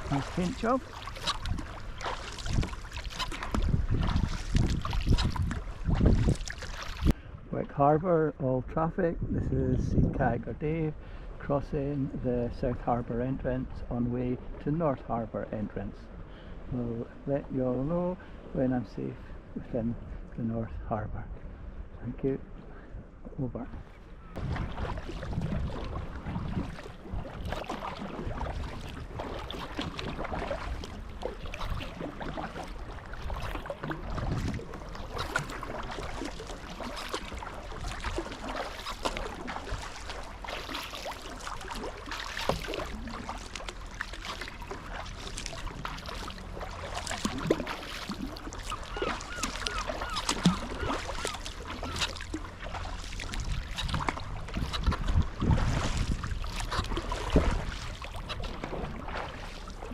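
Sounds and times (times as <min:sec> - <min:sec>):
paddle splashes: 0:00.0 - 0:07.4, 0:23.7 - 0:59.9
water slapping along hull: 0:00.0 - 0:08.0, 0:10.2 - 0:59.9.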